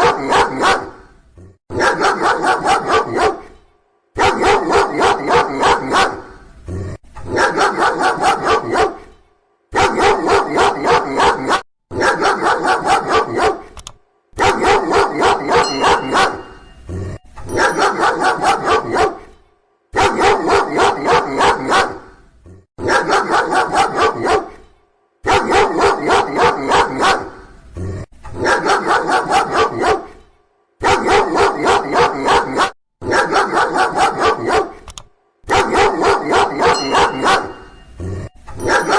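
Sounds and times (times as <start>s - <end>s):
dog barking rapidly: 0.0s - 1.1s, 1.7s - 3.5s, 4.2s - 6.4s, 7.2s - 9.0s, 9.7s - 13.8s, 14.4s - 16.7s, 17.5s - 19.3s, 20.0s - 22.1s, 22.8s - 24.6s, 25.2s - 27.4s, 28.3s - 30.1s, 30.8s - 34.8s, 35.5s - 37.8s, 38.6s - 38.9s.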